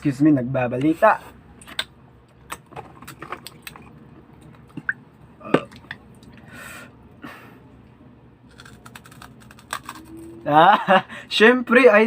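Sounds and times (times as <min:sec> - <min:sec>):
crisp snack crunching: 0:08.5 - 0:10.4.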